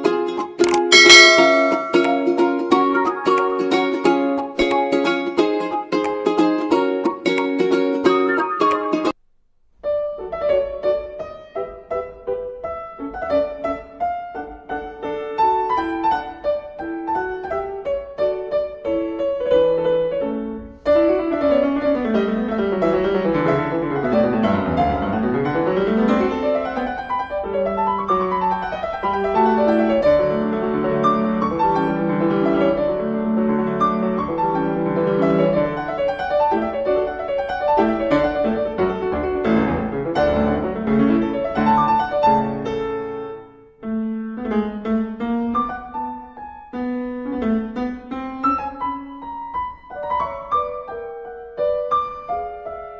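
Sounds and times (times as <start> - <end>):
piano music: 0.0 - 9.2, 21.2 - 52.9.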